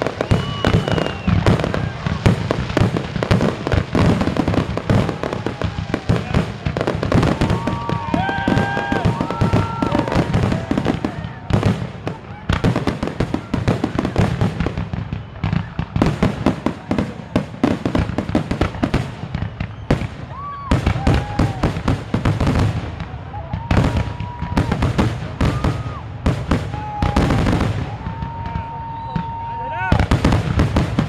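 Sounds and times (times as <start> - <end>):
fireworks bangs and crackles: 0.0 - 31.0
fireworks whistling: 0.0 - 31.0.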